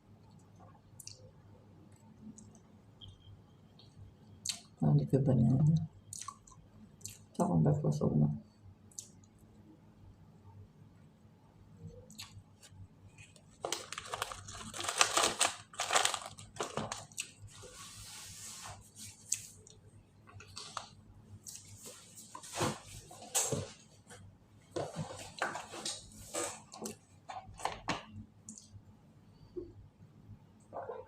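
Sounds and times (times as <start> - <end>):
snack packet crinkling: 13.4 - 17.4.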